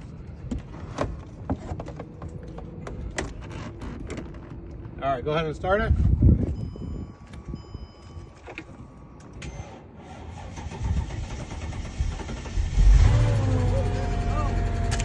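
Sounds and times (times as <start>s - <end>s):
car engine cranking and starting: 9.2s - 15.0s.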